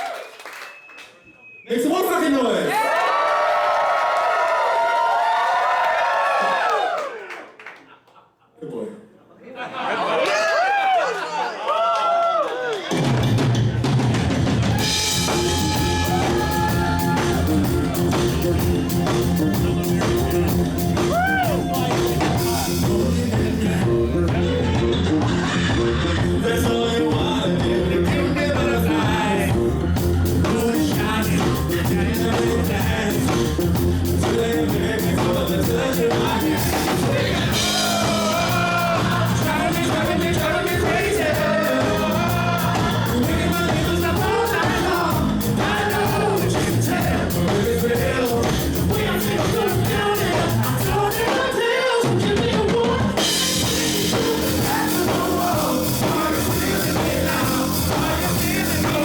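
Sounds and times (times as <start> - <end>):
dance-pop music with drums: 13.0 - 59.0
person singing: 14.8 - 59.0.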